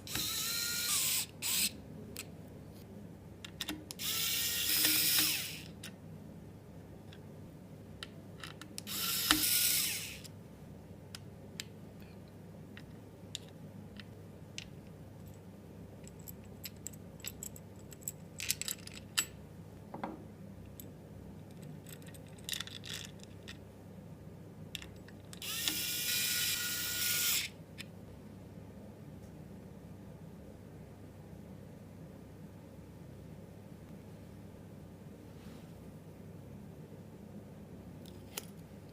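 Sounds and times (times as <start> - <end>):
electric screwdriver whirring: 0.1 - 1.7, 4.0 - 5.7, 8.9 - 10.3, 25.4 - 27.5
parts clicking and tapping: 3.4 - 6.0, 8.0 - 9.8, 11.1 - 15.4.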